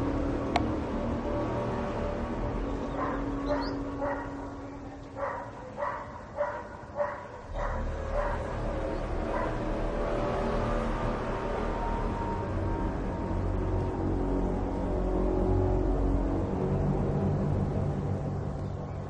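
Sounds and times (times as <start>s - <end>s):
steady low hum: 0.0s - 19.0s
dog barking: 3.0s - 4.5s, 5.2s - 8.5s, 9.3s - 9.6s.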